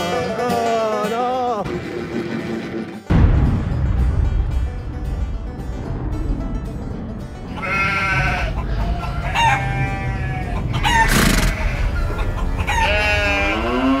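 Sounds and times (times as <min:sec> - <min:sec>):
low rumble: 0:03.1 - 0:13.8
rooster crowing: 0:09.0 - 0:11.3.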